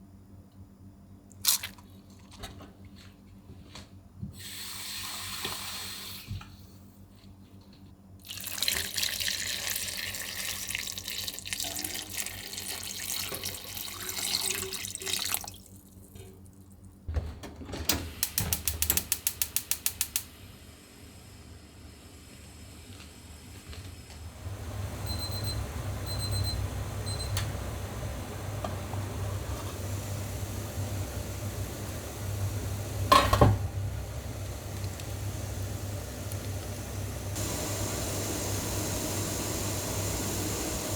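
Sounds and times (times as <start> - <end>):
sharp clicks: 18.2 - 20.3
low steady rumble: 24.3 - 40.3.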